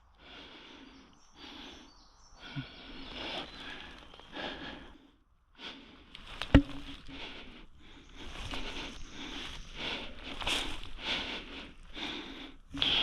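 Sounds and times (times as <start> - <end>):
footsteps through undergrowth: 3.0 - 4.9, 6.1 - 13.0.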